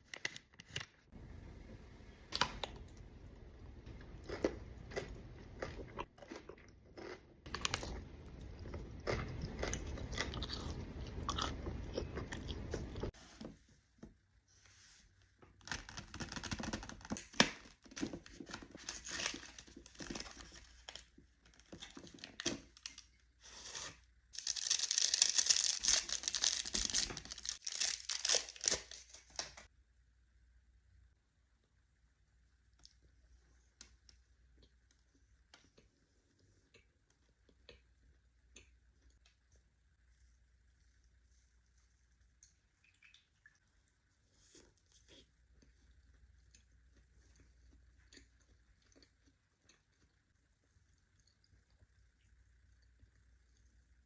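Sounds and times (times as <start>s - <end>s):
chewing and crunching chocolates: 3.8s - 13.1s, 24.4s - 29.6s, 44.5s - 53.7s.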